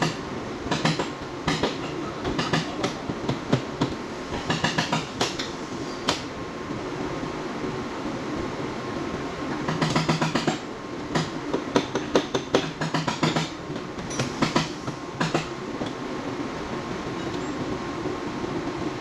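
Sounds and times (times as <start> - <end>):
hammer tapping on sheet metal: 0.0 - 5.5, 9.6 - 16.0.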